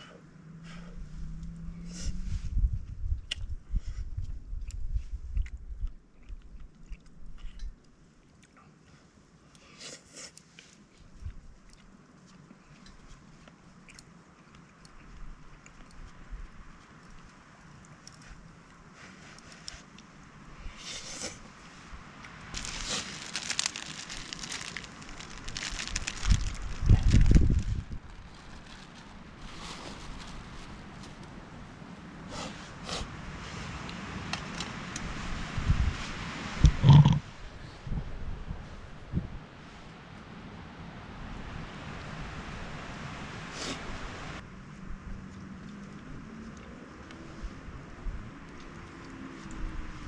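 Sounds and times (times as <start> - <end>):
person chewing food: 4.6 - 8.6, 9.5 - 16.2
wood fire crackling: 22.2 - 33.0
heavy low rumble: 22.6 - 32.1.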